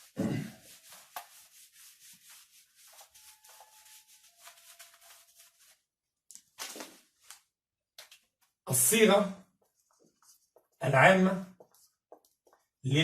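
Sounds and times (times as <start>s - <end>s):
board eraser rubbing: 0.0s - 5.7s.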